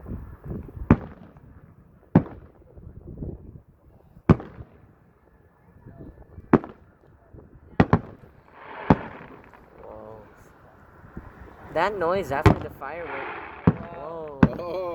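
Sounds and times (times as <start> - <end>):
fireworks shells bursting: 7.8 - 14.9.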